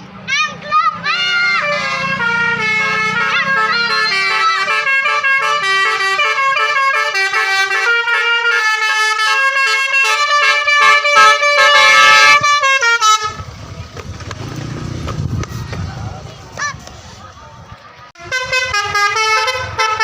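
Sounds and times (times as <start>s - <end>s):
musical vehicle horn tune: 1.5s - 13.6s, 18.2s - 20.0s
low engine rumble: 12.3s - 20.0s.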